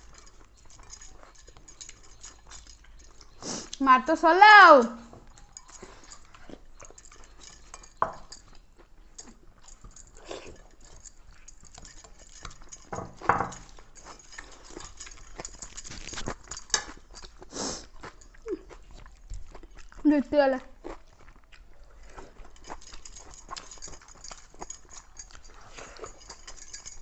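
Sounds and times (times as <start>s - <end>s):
plates clinking: 6.8s - 8.6s, 11.7s - 13.7s.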